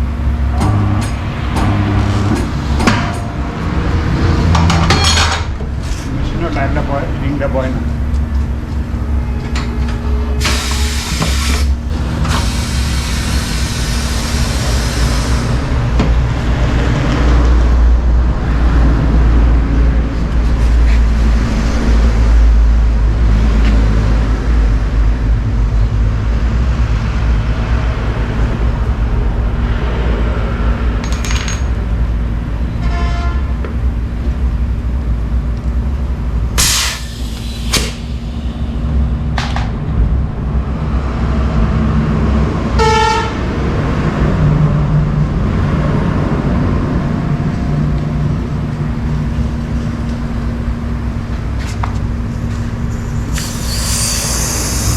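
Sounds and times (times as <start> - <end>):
rumble of road traffic: 0.0 - 54.9
vehicle horn honking: 32.8 - 33.5, 42.8 - 43.4.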